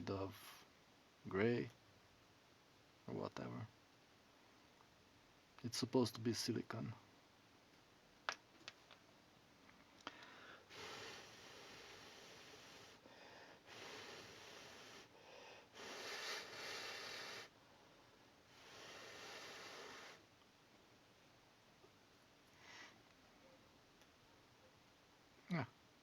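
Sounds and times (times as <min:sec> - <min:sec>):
soft breathing: 0:09.8 - 0:20.3, 0:22.5 - 0:23.6.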